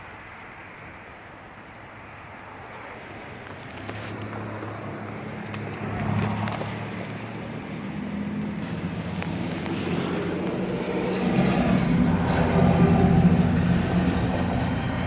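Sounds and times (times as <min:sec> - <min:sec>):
road noise: 0:00.0 - 0:15.0
car engine running: 0:02.1 - 0:15.0.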